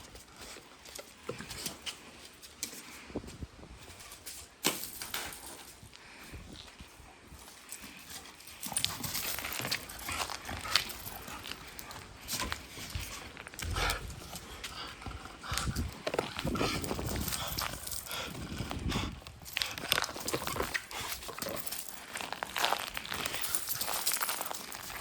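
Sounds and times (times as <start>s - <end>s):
scuffs and clicks of movement: 0.0s - 25.0s
dog panting hard: 8.7s - 19.8s.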